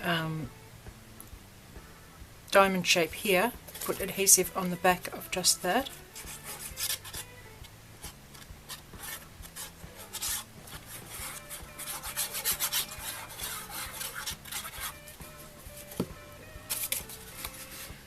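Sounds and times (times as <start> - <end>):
scratchy rubbing on paper: 5.8 - 7.4, 8.0 - 18.0.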